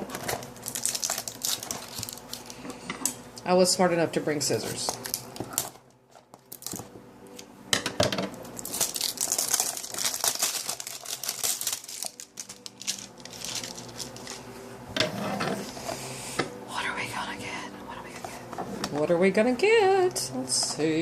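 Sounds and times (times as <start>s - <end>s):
packaging crinkling: 0.1s - 2.6s, 4.9s - 6.9s, 8.5s - 14.4s.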